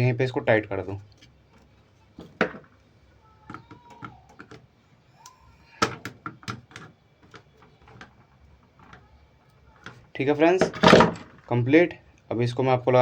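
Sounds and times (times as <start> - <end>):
plastic and metal parts clicking: 3.5 - 9.1.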